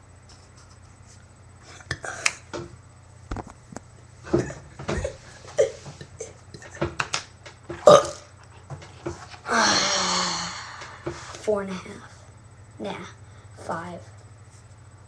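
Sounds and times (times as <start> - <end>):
person burping loudly: 7.8 - 8.3, 9.5 - 10.8.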